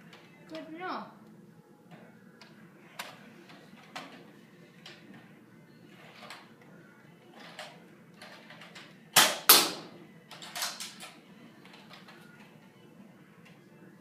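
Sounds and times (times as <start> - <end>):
toy blaster pops: 9.2 - 9.9.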